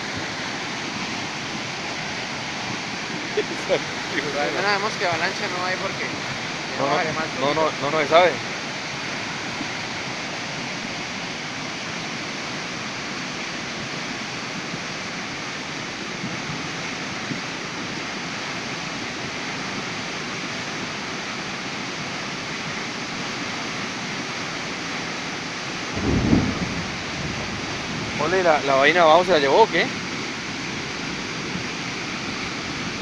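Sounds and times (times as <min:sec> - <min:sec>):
flooding river rushing: 0:00.0 - 0:33.0
low rumble: 0:25.8 - 0:28.3.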